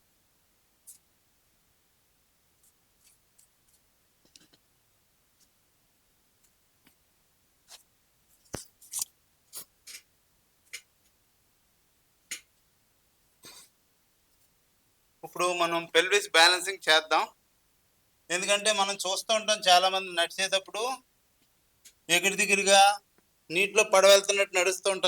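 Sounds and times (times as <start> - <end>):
rustling and scraping: 7.6 - 10.8.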